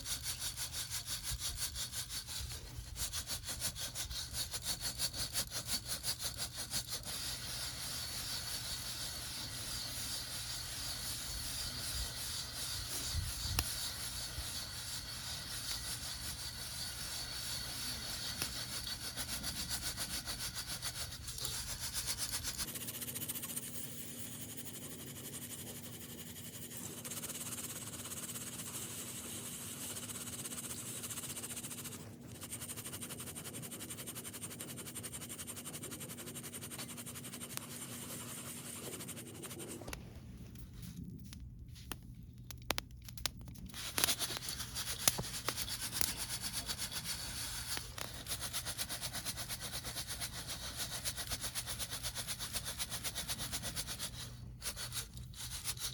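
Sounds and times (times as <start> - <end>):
coffee beans rattling in drum: 0.0 - 22.7, 42.7 - 55.9
steady hiss with low hum: 39.6 - 55.9.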